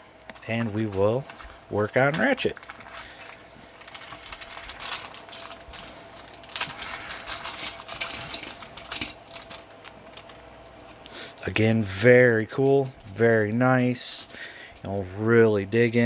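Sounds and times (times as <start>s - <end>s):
plastic toy parts clicking and rattling: 2.0s - 10.8s.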